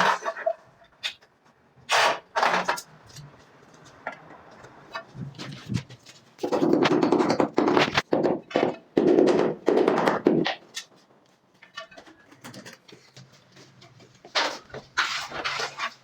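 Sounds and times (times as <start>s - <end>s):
tools scraping tiles: 0.0s - 1.2s, 1.9s - 3.3s, 11.6s - 16.0s
tools knocking on tiles: 6.4s - 10.8s.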